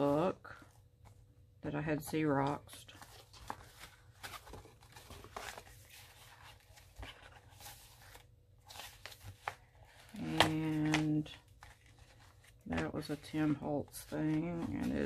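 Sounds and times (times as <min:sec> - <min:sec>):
person speaking: 0:00.0 - 0:00.8, 0:01.6 - 0:03.1, 0:10.0 - 0:11.5, 0:12.6 - 0:15.0
paper pages rustling: 0:02.1 - 0:15.0.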